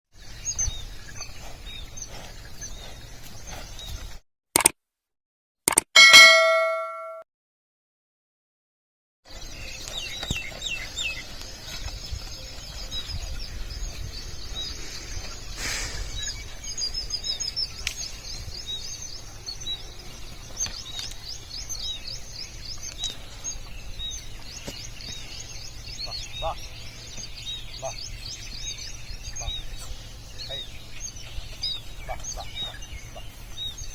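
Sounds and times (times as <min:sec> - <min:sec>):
small birds chirping: 0:00.1 - 0:04.2, 0:09.3 - 0:33.9
sharp clicks: 0:04.6 - 0:04.8, 0:05.7 - 0:05.9.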